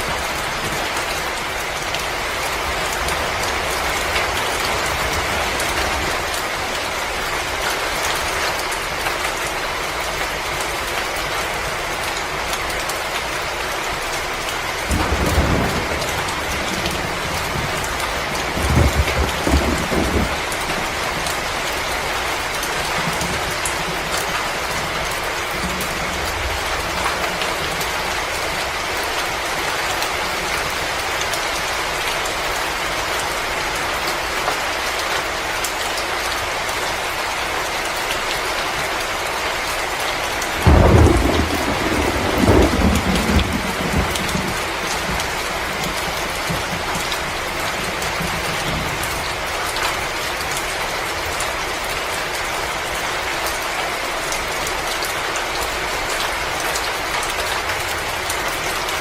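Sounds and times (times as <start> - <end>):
low rumble of thunder: 14.8 - 28.4, 40.6 - 49.4
rain hissing: 39.8 - 51.4.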